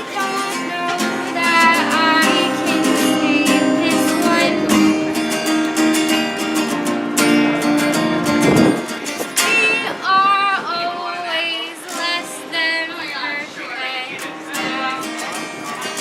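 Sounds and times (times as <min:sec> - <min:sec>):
person singing: 0:00.0 - 0:05.4
strummed acoustic guitar: 0:00.0 - 0:16.0.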